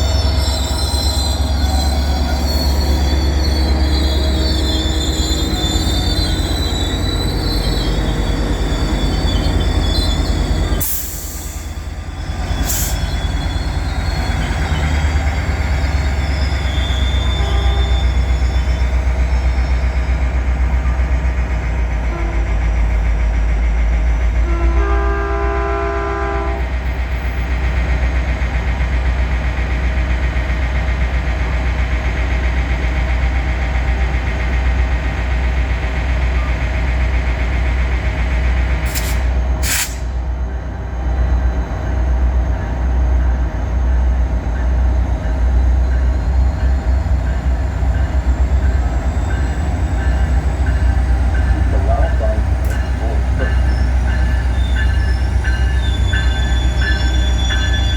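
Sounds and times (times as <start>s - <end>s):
passenger train rumbling past: 0.0s - 57.9s
train horn blast: 17.3s - 18.2s, 22.1s - 22.6s, 24.4s - 26.7s.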